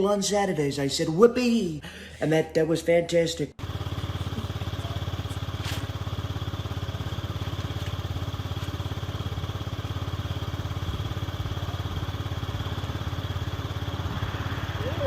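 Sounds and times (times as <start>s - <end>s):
engine idling: 3.6s - 15.0s.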